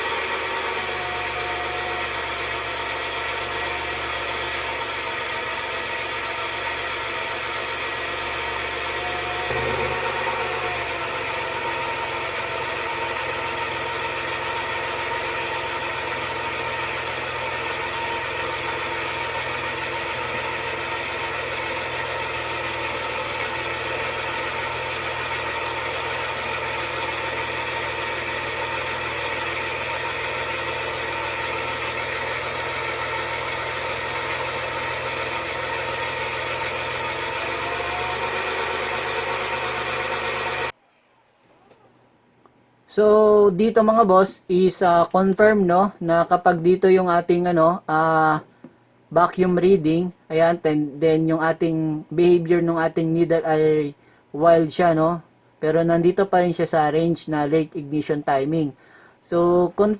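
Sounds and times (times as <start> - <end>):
engine idling steadily: 0.0 - 40.8.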